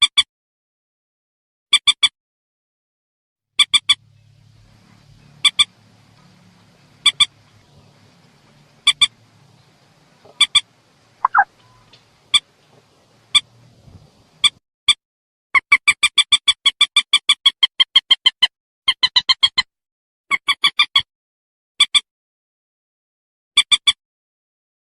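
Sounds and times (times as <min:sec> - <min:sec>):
rail bird call: 0:03.6 - 0:14.6
faint low hum: 0:03.7 - 0:14.5.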